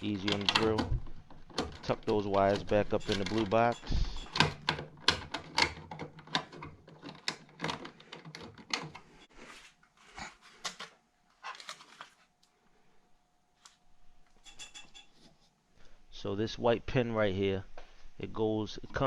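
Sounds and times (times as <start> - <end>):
clicks and scrapes of plastic parts: 0.0 - 9.3.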